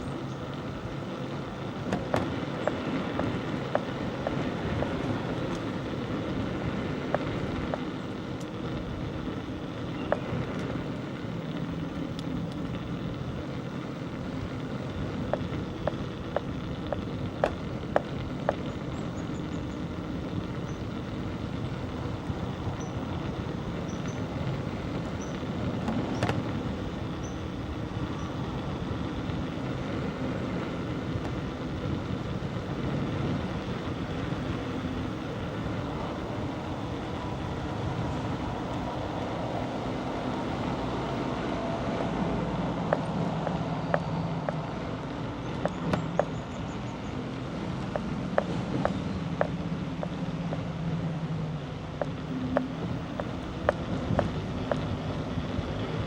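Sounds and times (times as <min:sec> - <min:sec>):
sharp rattling clicks: 0:00.0 - 0:41.4
bicycle tyres rumbling: 0:00.0 - 0:56.0
wind: 0:00.0 - 0:56.0.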